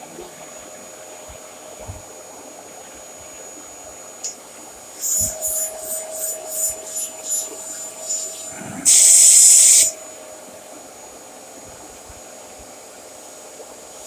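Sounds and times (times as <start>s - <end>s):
vacuum cleaner whining: 4.8s - 10.8s
hissing rushes of air: 5.1s - 10.0s.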